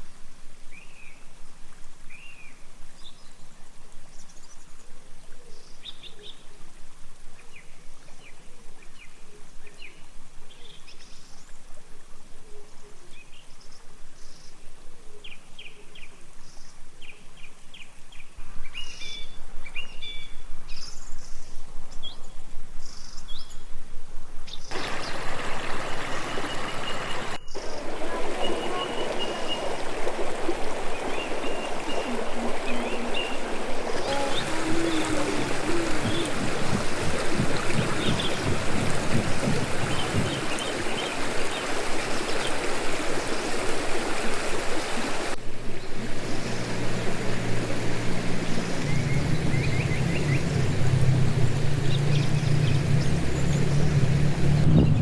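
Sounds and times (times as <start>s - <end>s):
flowing stream: 0.0s - 22.6s, 24.7s - 55.0s
small birds chirping: 24.6s - 55.0s.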